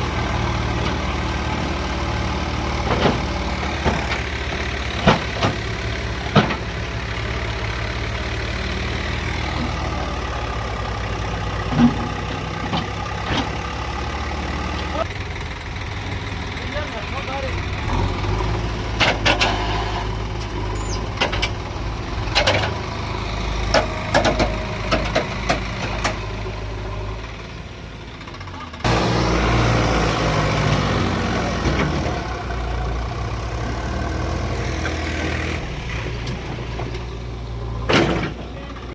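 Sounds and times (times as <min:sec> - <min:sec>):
heavy diesel engine running: 0:00.0 - 0:38.9
sharp metal knocks and clanks: 0:23.7 - 0:26.2, 0:37.8 - 0:38.6.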